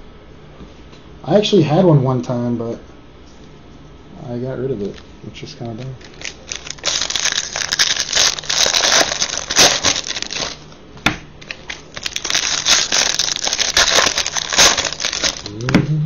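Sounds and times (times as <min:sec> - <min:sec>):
card pack wrappers crinkling: 0:05.7 - 0:10.8, 0:11.4 - 0:15.6.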